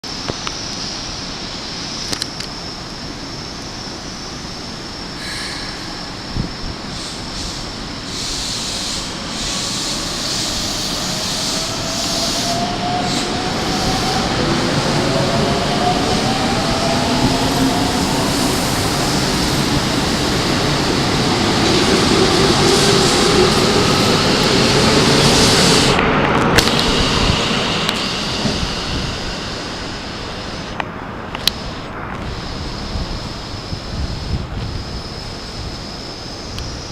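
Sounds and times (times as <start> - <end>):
train wheels rumbling: 4.4 - 36.0
electric train motor whine: 26.6 - 30.8.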